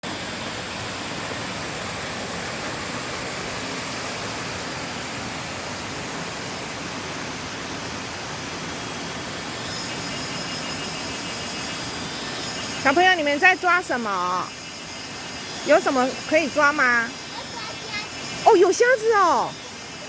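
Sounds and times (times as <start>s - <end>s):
water rushing over rocks: 0.0s - 9.8s.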